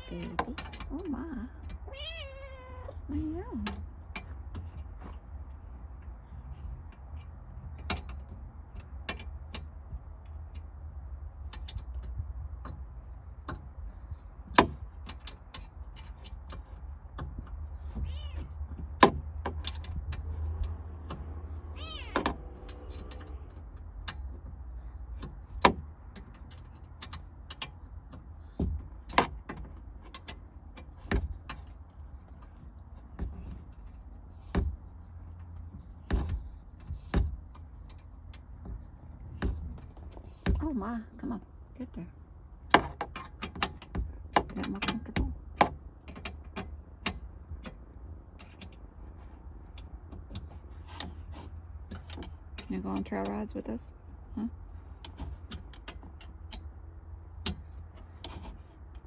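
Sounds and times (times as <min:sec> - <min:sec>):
cat meowing: 0:01.9 - 0:03.0, 0:18.0 - 0:18.5, 0:21.7 - 0:22.2
sharp clicks and knocks: 0:03.1 - 0:41.8, 0:42.6 - 0:53.8, 0:54.9 - 0:59.0.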